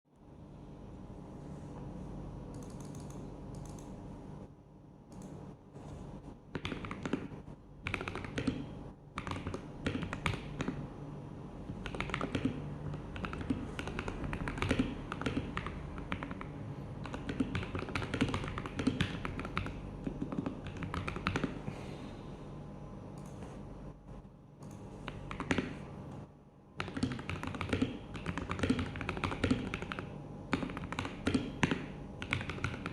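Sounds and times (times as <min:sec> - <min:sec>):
mechanical keyboard typing: 0:02.5 - 0:03.9, 0:06.5 - 0:10.8, 0:11.7 - 0:21.6, 0:24.6 - 0:25.8, 0:26.8 - 0:32.9.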